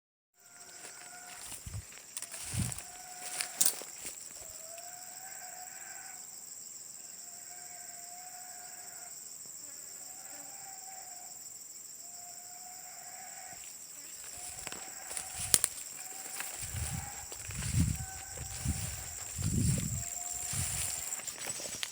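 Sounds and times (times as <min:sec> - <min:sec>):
high-pitched insect trilling: 0:00.4 - 0:06.3, 0:12.2 - 0:21.9.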